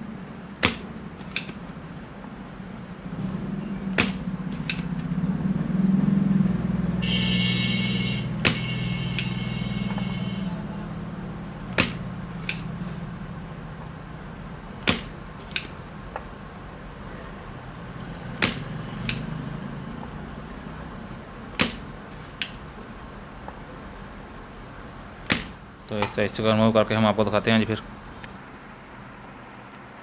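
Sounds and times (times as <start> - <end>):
low hum: 0.0 - 14.8
desoldering pump snapping: 0.6 - 1.6, 3.9 - 5.1, 8.3 - 9.4, 11.7 - 12.8, 14.8 - 16.3, 18.2 - 19.3, 21.5 - 22.6, 25.2 - 26.2
high whine: 2.0 - 14.6.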